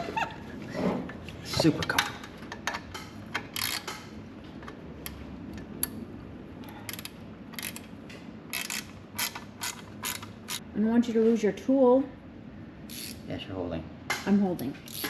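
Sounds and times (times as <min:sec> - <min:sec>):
ratchet wrench clicking: 0:03.4 - 0:04.0, 0:06.9 - 0:07.9, 0:08.5 - 0:10.6, 0:12.9 - 0:13.3.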